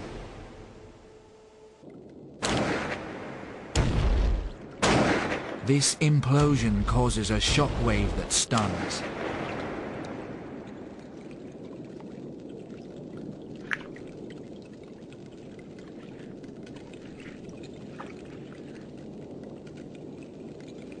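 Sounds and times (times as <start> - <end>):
underwater watery rush: 6.4 - 21.0.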